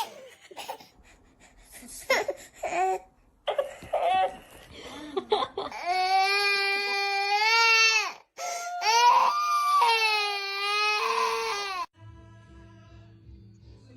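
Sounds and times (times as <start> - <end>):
baby crying: 5.7 - 11.9.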